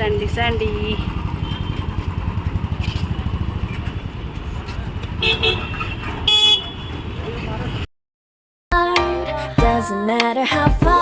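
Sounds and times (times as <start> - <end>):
motorcycle engine running: 0.0 - 7.8
vehicle horn honking: 0.8 - 2.3, 5.1 - 7.8.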